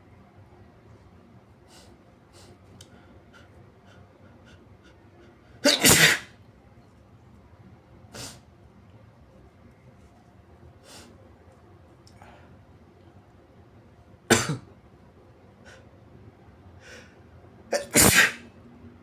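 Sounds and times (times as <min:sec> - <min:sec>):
person sneezing loudly: 0:05.6 - 0:06.4, 0:14.3 - 0:14.6, 0:17.7 - 0:18.5.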